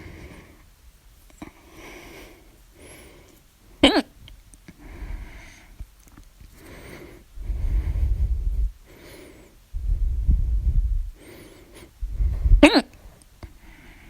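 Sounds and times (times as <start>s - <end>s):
woman breathing heavily: 0.0s - 0.7s, 1.4s - 3.4s, 4.7s - 5.8s, 6.5s - 14.0s
woman hiccuping: 3.8s - 4.1s, 12.6s - 12.9s.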